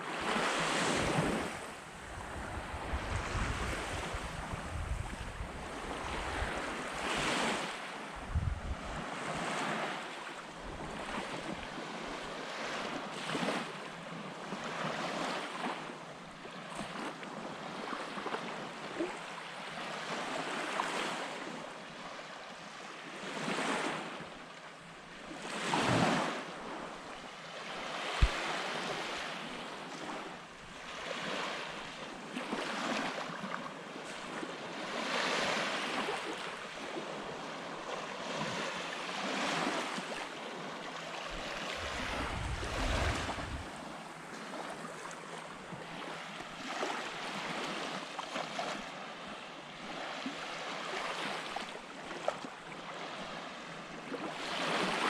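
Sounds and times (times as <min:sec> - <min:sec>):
waves breaking on a beach: 0:00.0 - 0:55.0
wind buffeting microphone: 0:01.0 - 0:06.7, 0:08.2 - 0:09.0, 0:41.7 - 0:43.9.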